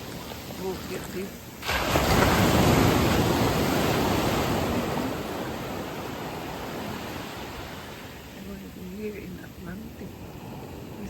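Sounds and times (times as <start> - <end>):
surf washing: 0.0 - 11.0
ocean wave crashing: 0.6 - 8.3.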